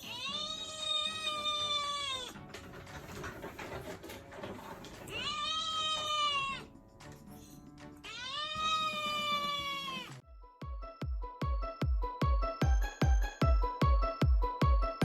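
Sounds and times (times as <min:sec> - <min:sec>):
kitten meowing: 0:00.0 - 0:02.4, 0:05.1 - 0:06.7, 0:08.0 - 0:10.1.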